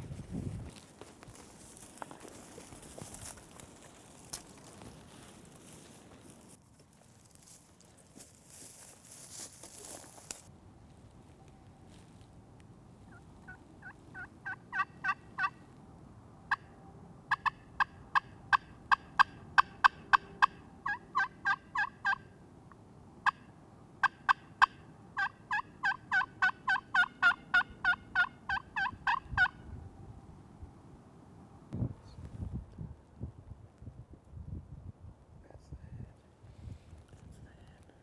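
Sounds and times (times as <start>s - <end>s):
turkey yelping: 13.1s - 15.6s, 17.3s - 22.3s, 23.2s - 29.6s.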